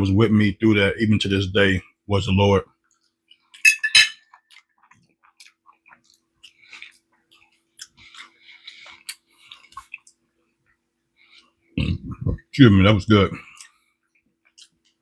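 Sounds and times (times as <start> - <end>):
utensils clinking on dishware: 3.6 - 4.3
chewing and mouth sounds: 4.3 - 12.5, 13.4 - 15.0.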